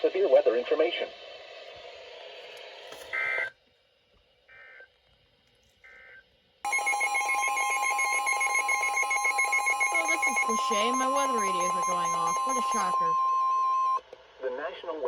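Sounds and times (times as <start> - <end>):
electronic beeps: 6.7 - 14.0
loud steady alert tone: 6.7 - 14.0
warbling data bursts: 6.7 - 14.0.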